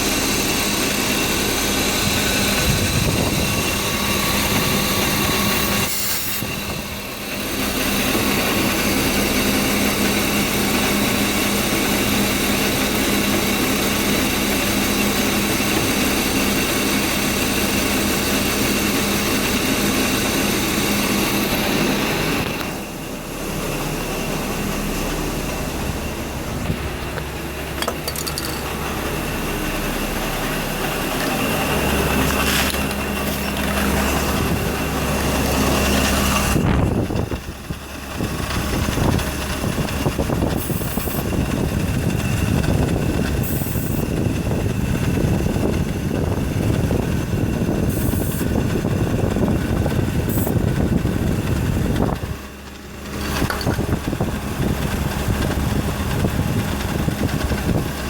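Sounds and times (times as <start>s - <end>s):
car engine idling: 0.0s - 58.0s.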